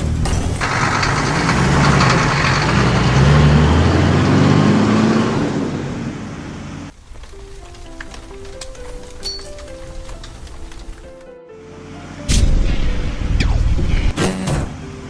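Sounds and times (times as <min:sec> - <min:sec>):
vehicle engine revving: 0:00.0 - 0:07.0.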